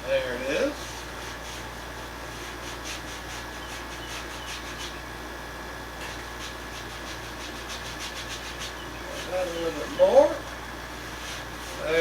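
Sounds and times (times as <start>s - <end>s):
steady low hum: 0.0s - 12.0s
paintbrush scrubbing on canvas: 0.8s - 1.7s, 2.3s - 5.0s, 6.0s - 10.3s, 11.0s - 12.0s.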